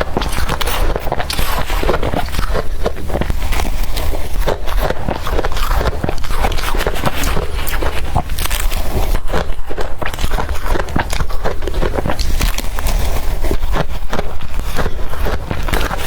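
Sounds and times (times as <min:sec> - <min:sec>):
chewing crushed ice: 0:00.0 - 0:16.0
steady low hum: 0:00.0 - 0:16.0.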